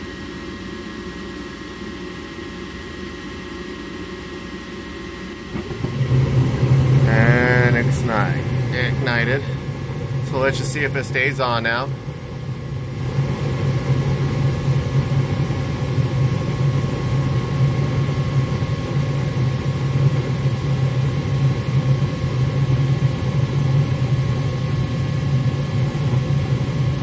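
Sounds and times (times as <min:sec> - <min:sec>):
furnace motor humming: 0:00.0 - 0:27.0
burner airy rush: 0:05.6 - 0:13.2.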